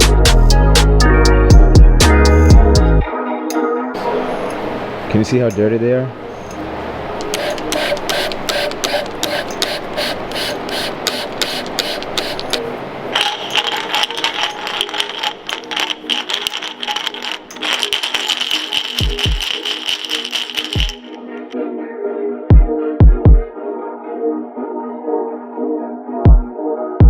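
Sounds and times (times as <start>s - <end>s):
music with clicking beat: 0.0s - 2.9s, 7.2s - 12.6s, 13.2s - 21.6s, 22.5s - 23.5s, 26.3s - 26.5s.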